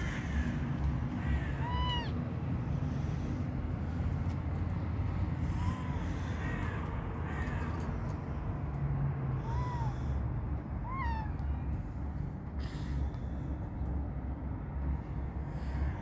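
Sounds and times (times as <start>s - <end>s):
steady low rumble: 0.0s - 16.0s
kittens mewing: 1.2s - 2.2s.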